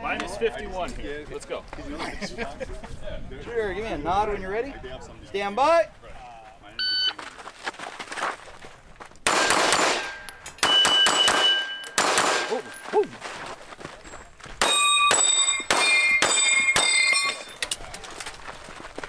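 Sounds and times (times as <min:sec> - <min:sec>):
pistol shots: 0:09.2 - 0:13.0, 0:14.6 - 0:17.8
metallic ring of steel plates: 0:10.0 - 0:13.0, 0:14.6 - 0:17.8.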